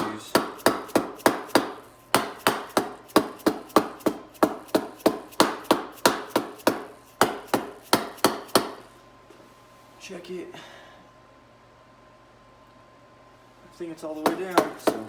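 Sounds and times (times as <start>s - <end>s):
hammer tapping metal: 0.0s - 8.9s, 14.2s - 15.0s.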